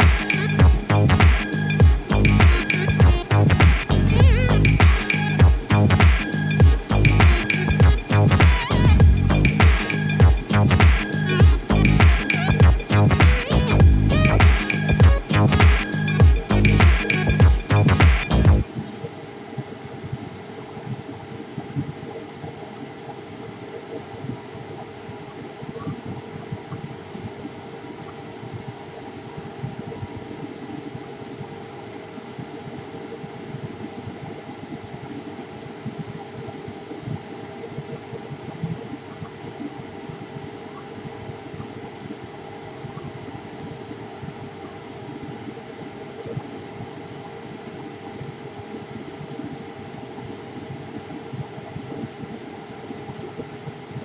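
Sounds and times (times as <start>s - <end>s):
laser engraver machine hum: 0.0s - 25.6s, 39.8s - 54.0s.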